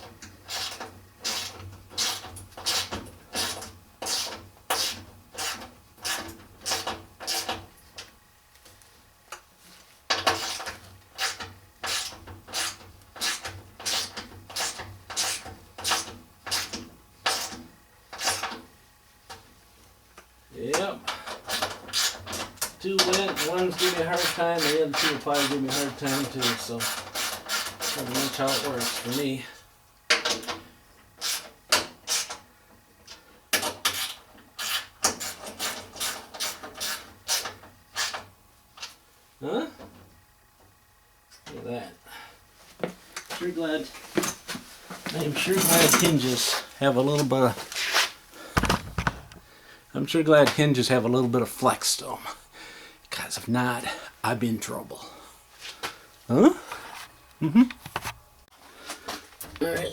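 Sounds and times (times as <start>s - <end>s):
hand tool rasping scrape: 23.4s - 29.2s, 45.3s - 46.6s.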